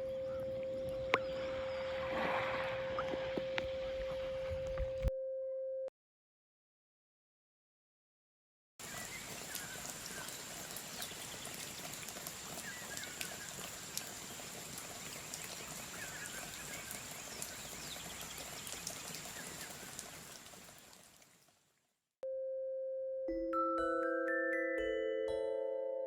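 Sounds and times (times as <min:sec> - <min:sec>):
bird chirping: 0:00.0 - 0:05.1
thin high whine: 0:00.0 - 0:05.1
pure steady tone: 0:00.0 - 0:05.9, 0:22.2 - 0:23.9
waves washing: 0:00.4 - 0:05.1.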